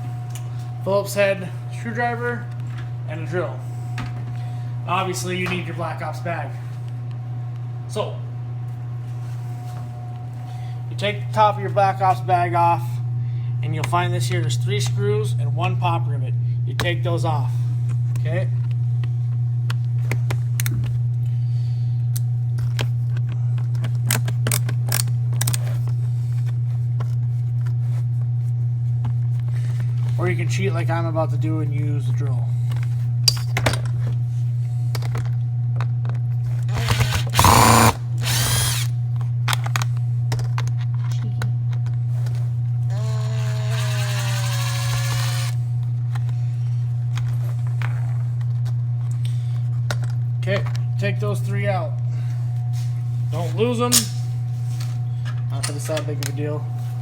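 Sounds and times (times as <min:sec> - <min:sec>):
steady low hum: 0:00.0 - 0:57.0
power drill motor whining: 0:36.7 - 0:38.9, 0:42.9 - 0:45.6.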